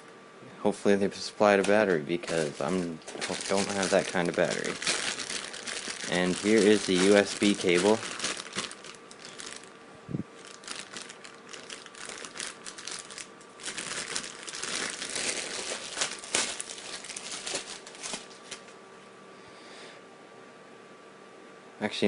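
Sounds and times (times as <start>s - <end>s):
plastic packaging crinkling: 1.4s - 18.8s.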